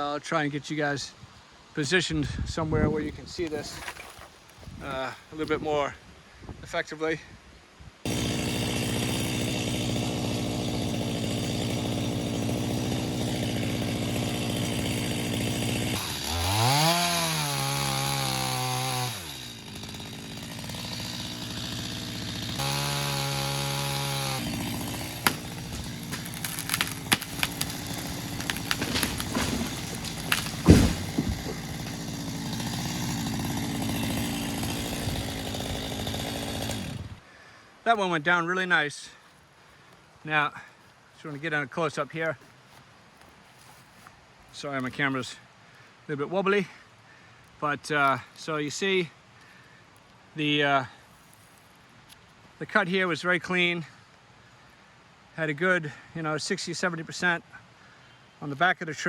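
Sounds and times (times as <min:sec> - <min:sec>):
wood cracking: 0:03.5 - 0:04.8, 0:08.1 - 0:37.0
chainsaw cutting: 0:08.1 - 0:37.2
tree crashing down: 0:19.7 - 0:37.0.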